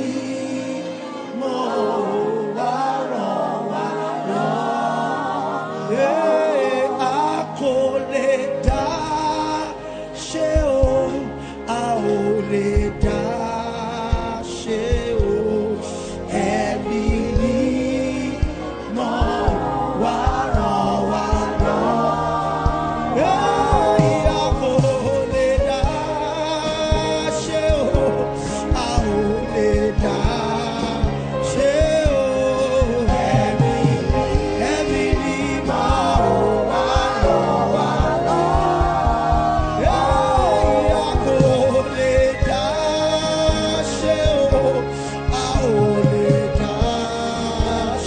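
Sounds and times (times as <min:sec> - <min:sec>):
choir singing: 0:00.0 - 0:48.0
keyboard chords: 0:00.0 - 0:48.0
steady drum beat: 0:14.1 - 0:15.5, 0:16.4 - 0:48.0.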